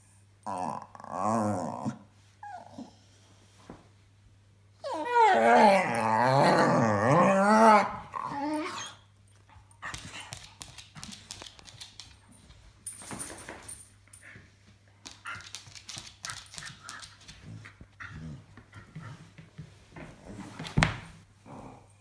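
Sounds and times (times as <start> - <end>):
dog whining vocal noises: 0.5 - 3.2, 4.8 - 9.2
faint clicks and rustles: 9.3 - 21.2.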